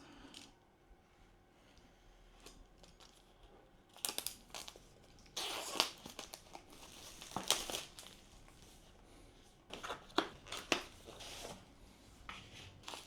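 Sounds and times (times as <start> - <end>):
plastic wrapping crinkling and tearing: 3.9 - 8.8, 9.7 - 11.6, 12.8 - 13.0.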